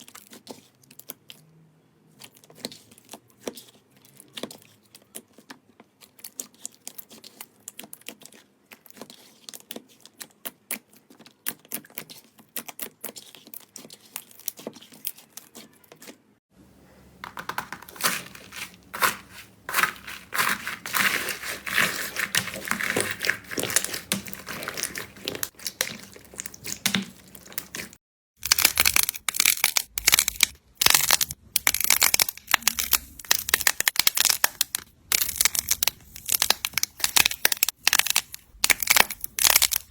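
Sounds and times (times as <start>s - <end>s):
slime squeezed crackling: 17.5s - 39.9s.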